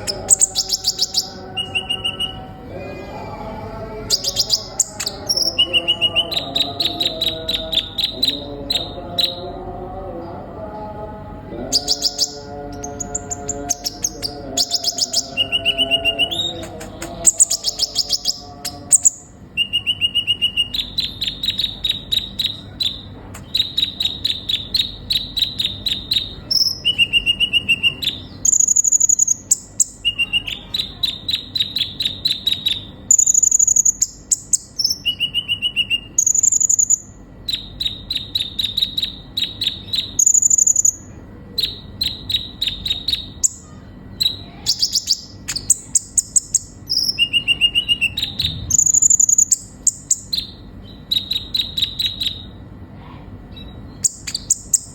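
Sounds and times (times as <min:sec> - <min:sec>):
bird trilling: 0:00.0 - 0:02.5, 0:04.1 - 0:09.6, 0:11.6 - 0:54.9
very high bird whistles: 0:11.8 - 0:41.0, 0:41.6 - 0:52.6, 0:53.5 - 0:54.9.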